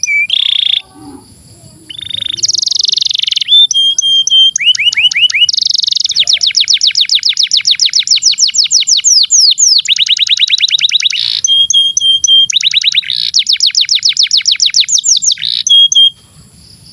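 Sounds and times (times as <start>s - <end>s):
canary singing rolling trills: 0.0s - 16.9s.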